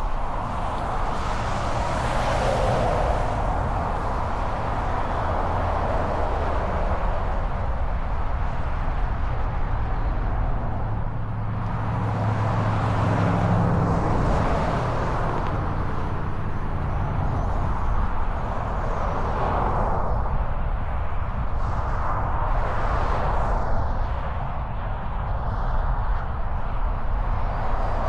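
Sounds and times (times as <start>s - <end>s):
low engine hum: 0.0s - 28.0s
road noise: 0.0s - 28.0s
wind noise: 0.0s - 28.0s.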